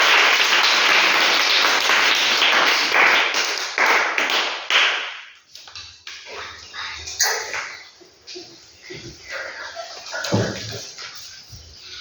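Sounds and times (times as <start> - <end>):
group applauding: 0.0 - 5.2.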